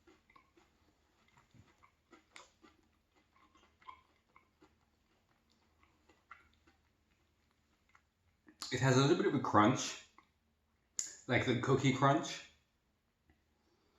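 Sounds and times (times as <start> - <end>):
chewing chocolate bar crunches: 0.0 - 8.6.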